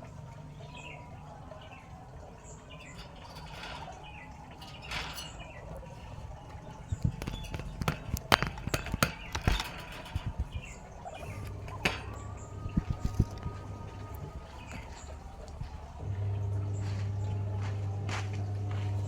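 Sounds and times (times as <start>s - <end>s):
birds chirping: 0.0s - 19.0s
sharp taps and knocks: 2.8s - 15.7s.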